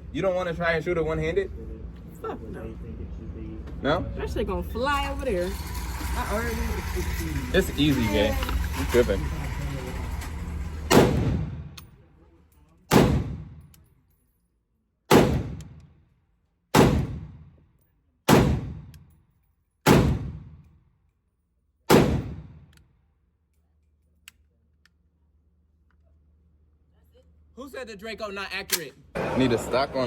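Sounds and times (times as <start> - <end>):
pistol shots with echo: 10.9 - 11.7, 12.9 - 13.6, 15.1 - 15.8, 16.8 - 17.4, 18.3 - 18.9, 19.9 - 20.4, 21.9 - 22.5.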